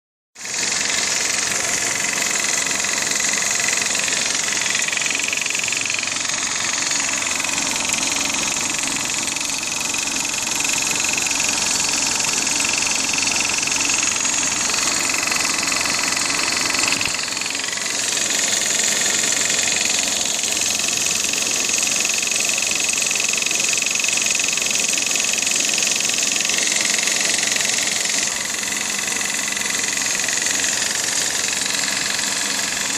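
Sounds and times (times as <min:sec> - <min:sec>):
car engine idling: 0:00.4 - 0:23.2, 0:26.5 - 0:32.9
engine knock: 0:00.4 - 0:32.9.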